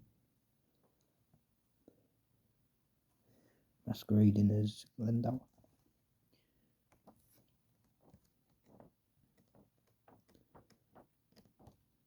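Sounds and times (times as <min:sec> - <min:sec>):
faint clicks and rustles: 0:05.4 - 0:12.0.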